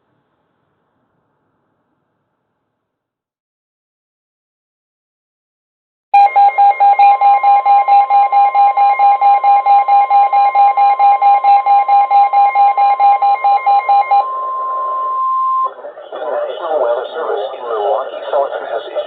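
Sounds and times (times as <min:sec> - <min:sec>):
rapid alarm beeps: 0:06.2 - 0:16.5
steady warning alarm tone: 0:06.2 - 0:19.0.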